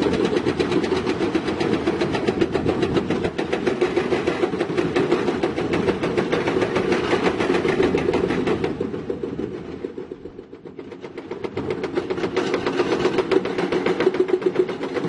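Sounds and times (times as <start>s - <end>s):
tracked earthmoving machine running: 0.0s - 15.0s.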